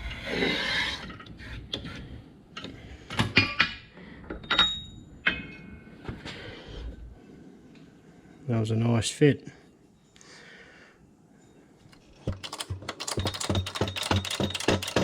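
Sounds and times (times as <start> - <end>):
steel tools clinking: 12.0 - 15.0.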